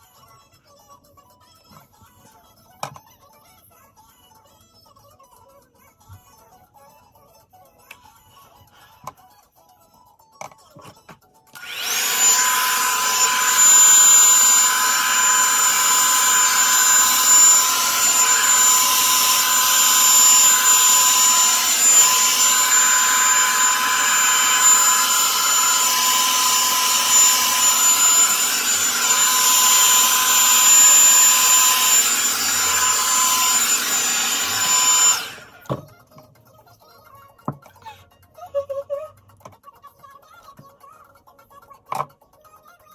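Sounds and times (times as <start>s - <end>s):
hot-air brush dryer running: 11.6s - 35.8s.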